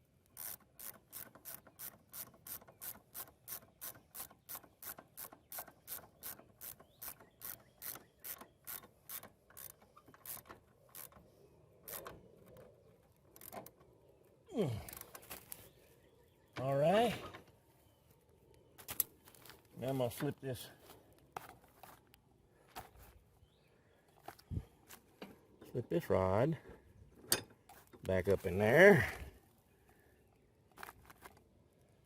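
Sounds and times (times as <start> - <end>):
ratchet wrench clicking: 0.3 - 11.2.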